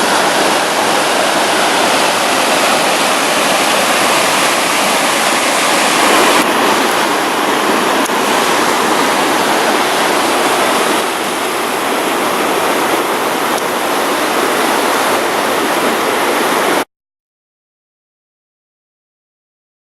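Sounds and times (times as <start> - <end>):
stream water rushing: 0.0 - 16.9.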